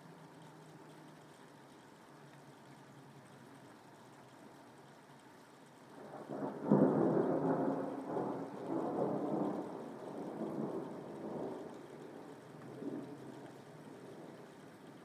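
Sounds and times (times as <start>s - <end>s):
steady rain: 0.0s - 15.0s
thunder clap and rumble: 6.1s - 14.4s.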